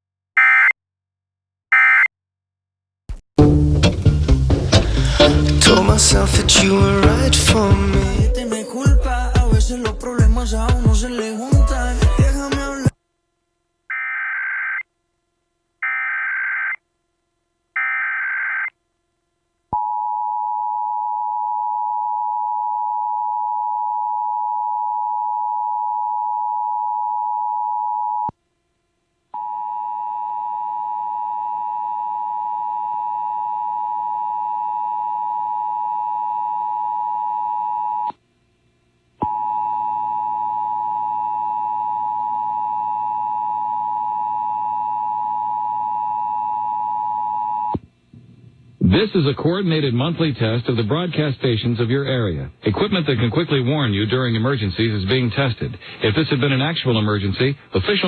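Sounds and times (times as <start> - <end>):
low hum: 3.4 - 8.3.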